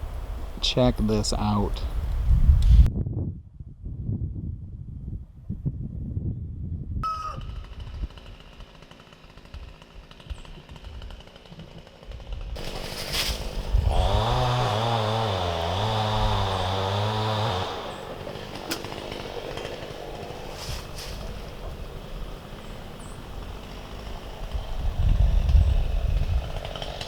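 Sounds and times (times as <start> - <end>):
small engine running: 7.1 - 27.0.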